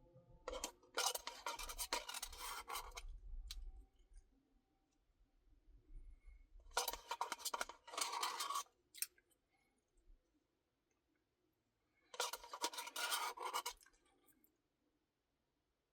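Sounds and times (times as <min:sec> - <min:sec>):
rapid scratchy scraping: 0:12.2 - 0:13.8.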